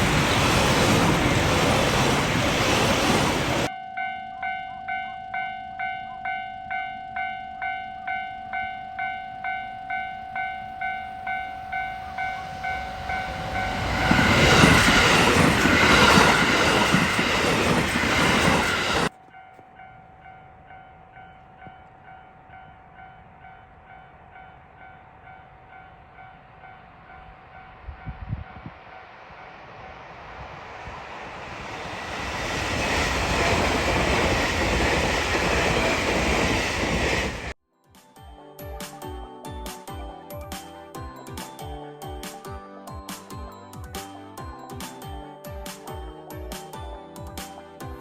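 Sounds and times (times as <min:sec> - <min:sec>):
approaching train rumble: 0:00.0 - 0:03.7, 0:06.6 - 0:37.6
train passing over rails: 0:00.0 - 0:37.6.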